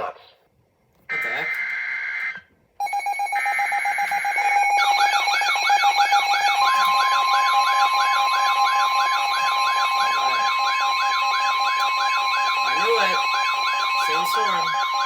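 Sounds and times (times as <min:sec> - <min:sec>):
steady warning alarm tone: 0:01.1 - 0:15.0
warbling electronic siren alarm: 0:01.1 - 0:15.0
rapid electronic pulsing: 0:04.0 - 0:15.0.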